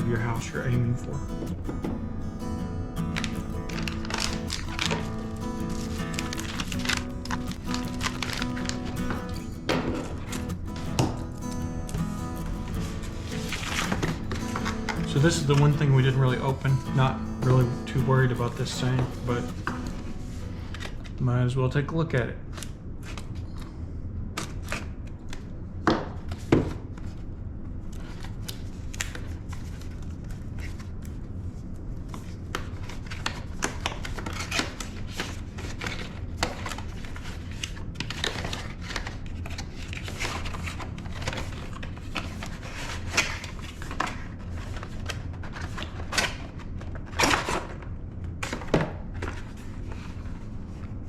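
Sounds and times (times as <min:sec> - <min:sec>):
steady low hum: 0:00.0 - 0:51.0
packaging rustling and scraping: 0:03.0 - 0:21.2, 0:26.4 - 0:51.0.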